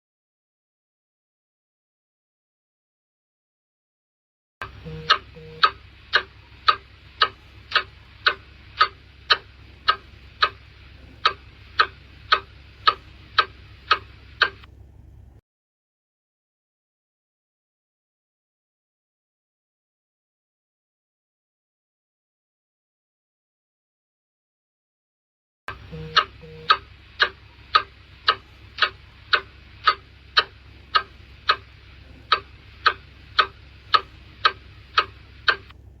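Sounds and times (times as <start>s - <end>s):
clock ticking: 4.6s - 14.7s, 25.7s - 35.8s
faint low hum: 4.6s - 15.4s, 25.7s - 36.0s.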